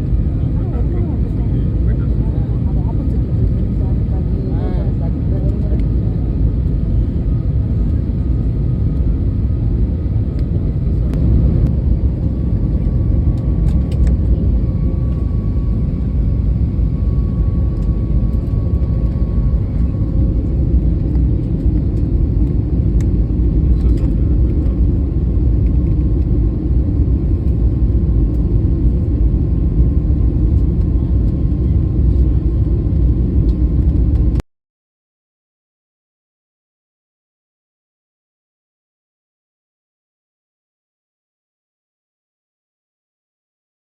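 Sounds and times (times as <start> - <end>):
airliner cabin engine rumble: 0.0 - 34.4.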